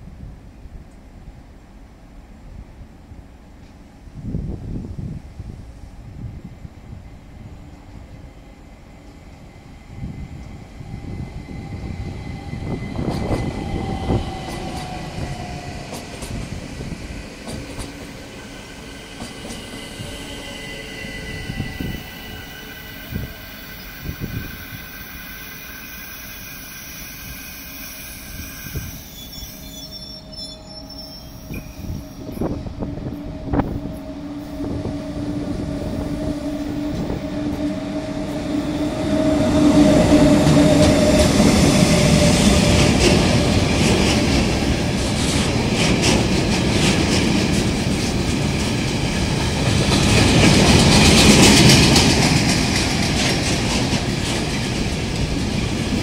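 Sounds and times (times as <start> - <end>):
steady train hum: 0.0 - 56.0
train wheels squealing: 9.1 - 16.5, 17.6 - 34.9.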